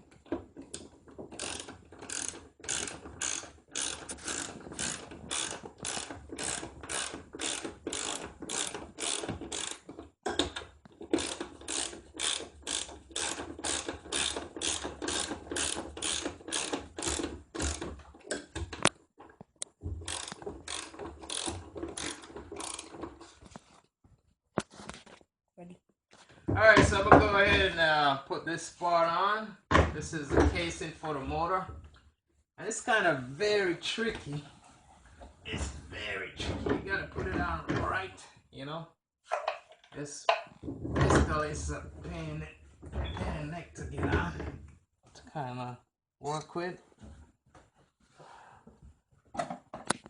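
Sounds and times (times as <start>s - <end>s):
ratchet wrench clicking: 1.4s - 9.8s, 11.2s - 17.8s, 20.1s - 22.9s.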